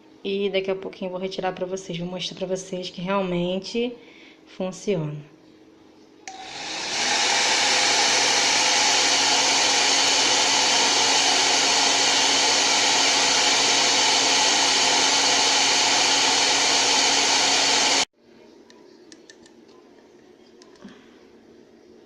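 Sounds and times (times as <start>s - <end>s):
hair dryer blowing: 6.3s - 18.1s.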